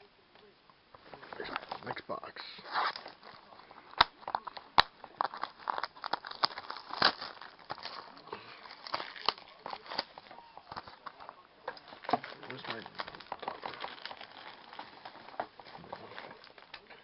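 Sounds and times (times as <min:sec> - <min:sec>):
packaging crinkling and rustling: 0:01.0 - 0:17.0.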